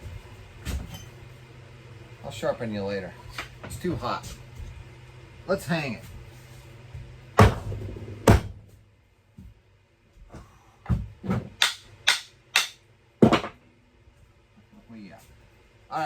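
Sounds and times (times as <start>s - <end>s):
axe head knocking onto wood: 11.6s - 13.6s.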